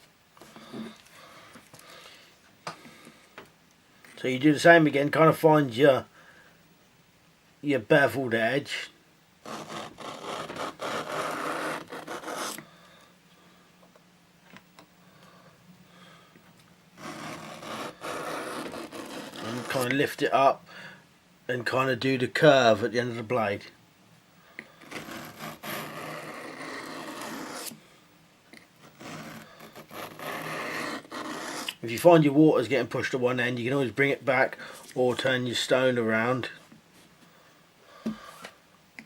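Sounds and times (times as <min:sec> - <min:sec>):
knife scraping on whetstone: 0:09.5 - 0:12.6, 0:17.0 - 0:19.9, 0:24.8 - 0:27.8, 0:28.9 - 0:31.8.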